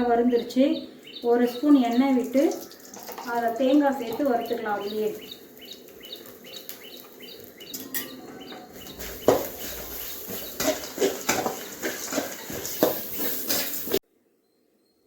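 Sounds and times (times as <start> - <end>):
bird chirping: 0.0 - 13.4
metal spatula scraping a pan: 7.8 - 14.0.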